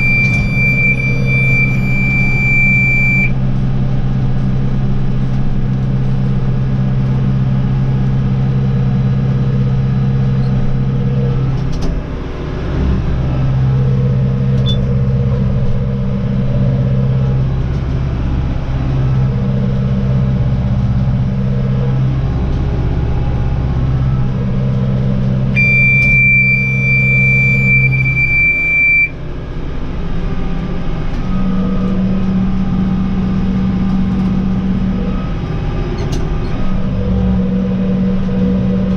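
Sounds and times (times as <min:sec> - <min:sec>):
high electronic warning buzzer: 0:00.0 - 0:03.3, 0:25.6 - 0:29.2.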